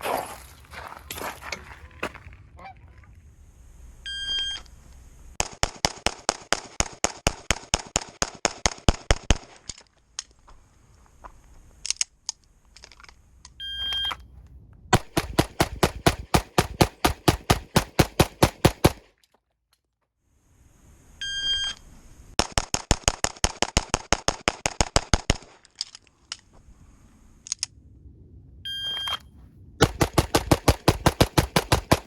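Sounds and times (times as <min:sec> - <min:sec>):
rapid pistol shots: 0:05.4 - 0:09.7, 0:15.0 - 0:19.1, 0:22.4 - 0:25.7, 0:29.8 - 0:32.0
shot timer beep: 0:28.7 - 0:29.2.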